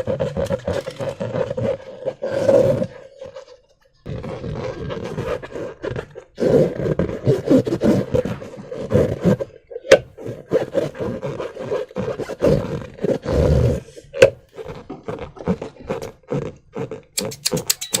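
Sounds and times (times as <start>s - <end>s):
rasping rubber sound: 0.0s - 18.0s
sharp clicks: 17.2s - 18.0s.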